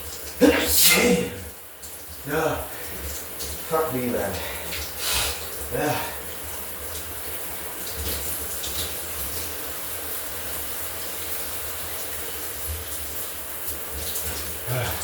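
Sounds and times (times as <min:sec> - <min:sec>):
shower water spraying: 0:00.0 - 0:15.0.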